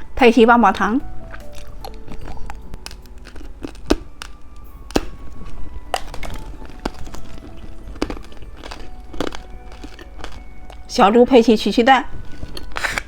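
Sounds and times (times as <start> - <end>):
quiet background music: 0.0 - 13.0
plastic wrapper crinkling: 1.2 - 13.0.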